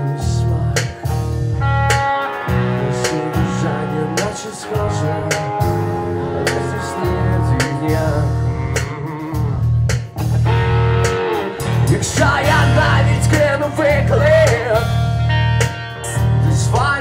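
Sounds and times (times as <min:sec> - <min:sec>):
rock band playing: 0:00.0 - 0:17.0.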